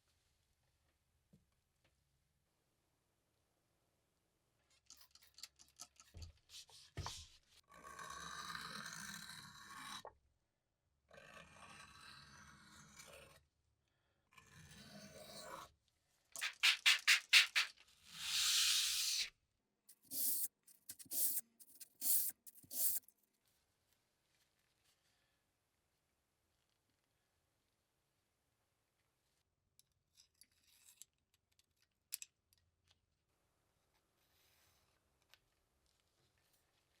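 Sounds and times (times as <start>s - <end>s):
hand rubbing and scraping: 6.4s - 7.6s, 16.4s - 19.3s, 19.9s - 23.1s.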